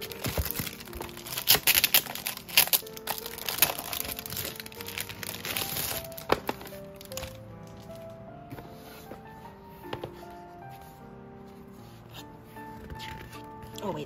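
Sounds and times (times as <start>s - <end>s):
packaging crinkling: 0.0s - 8.1s
background music: 0.0s - 14.0s.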